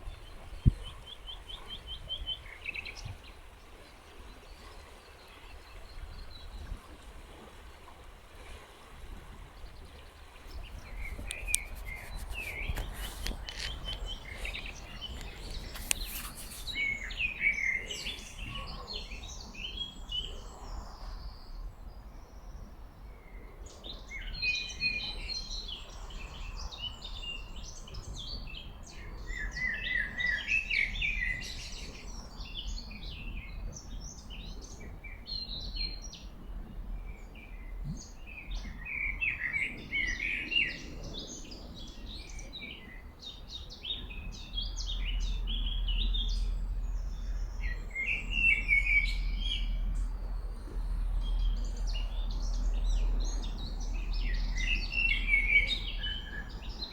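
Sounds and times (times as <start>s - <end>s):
songbirds chirping: 0.0s - 56.9s.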